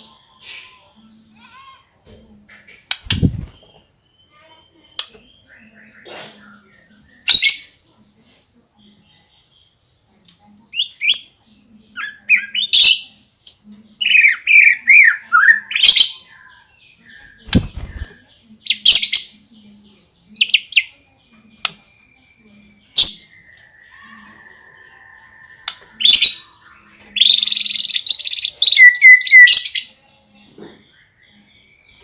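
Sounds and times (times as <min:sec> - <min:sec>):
bird singing chirps and whistles: 0:27.2 - 0:29.7.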